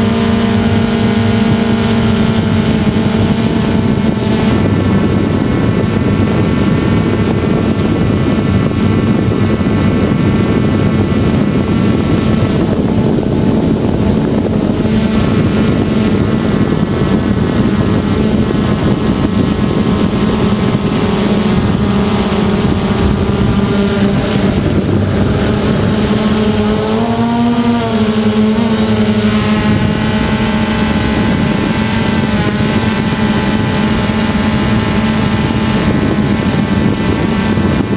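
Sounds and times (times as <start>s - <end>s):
drone motors buzzing: 0.0s - 37.9s.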